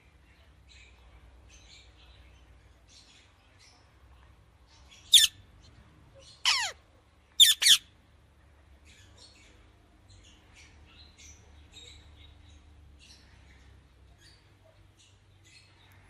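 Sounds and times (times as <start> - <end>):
soft chirps: 0.4 - 5.7
parrot squawking: 5.1 - 5.4, 6.4 - 6.8, 7.4 - 7.8.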